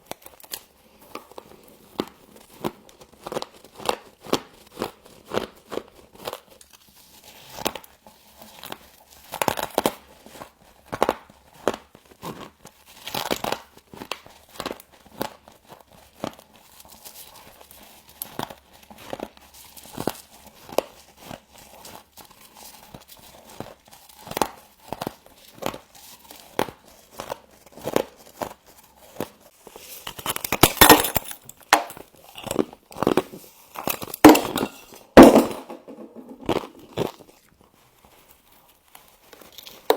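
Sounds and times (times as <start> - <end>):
frost crunching when bitten: 32.3 - 34.3.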